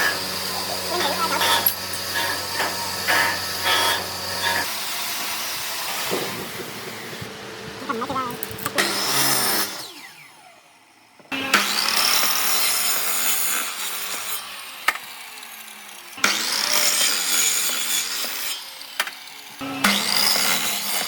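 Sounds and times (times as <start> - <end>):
motor winding down: 0.0 - 10.7
power tool whining into wood: 0.0 - 21.0.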